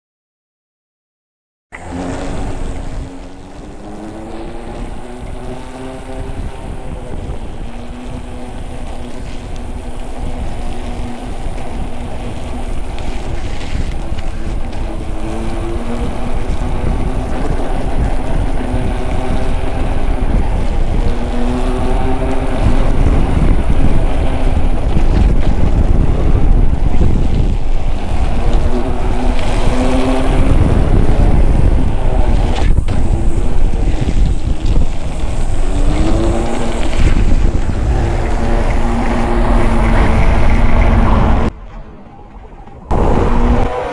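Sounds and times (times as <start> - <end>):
wind noise on microphone: 1.7 - 43.9
tyre rumble: 1.8 - 41.5.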